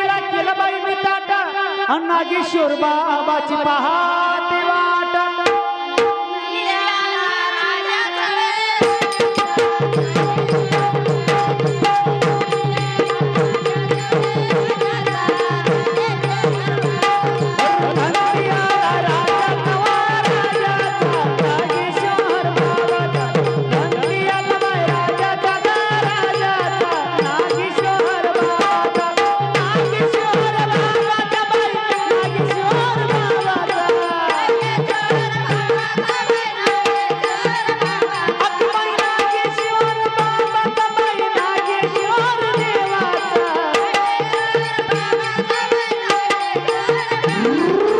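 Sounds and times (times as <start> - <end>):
tabla fast beat: 5.0 - 47.9
held melody tones: 47.2 - 47.9.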